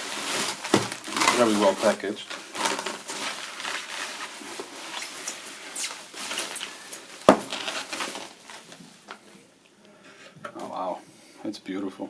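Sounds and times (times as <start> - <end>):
packaging rustling and crinkling: 0.0 - 9.3.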